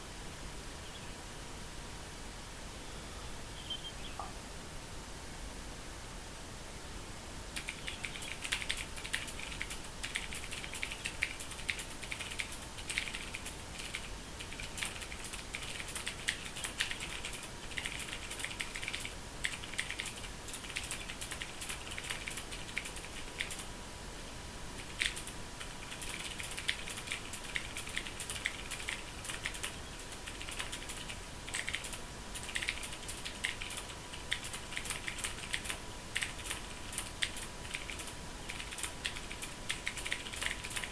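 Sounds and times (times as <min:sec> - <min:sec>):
mechanical keyboard typing: 0:07.6 - 0:23.7, 0:24.8 - 0:40.9.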